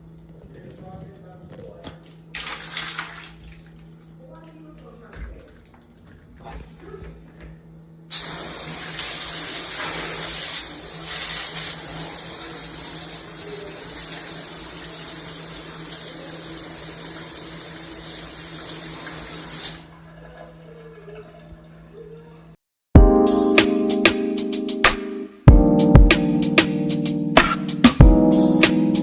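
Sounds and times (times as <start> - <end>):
shower head spraying water: 8.1 - 19.8.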